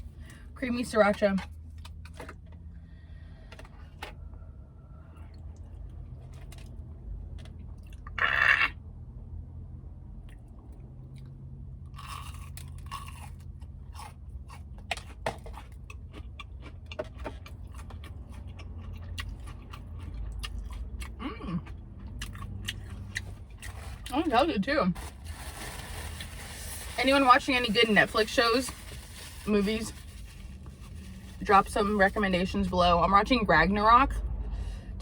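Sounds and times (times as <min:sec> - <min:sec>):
chewing with crisp crunches: 0:05.2 - 0:08.6, 0:10.2 - 0:24.4.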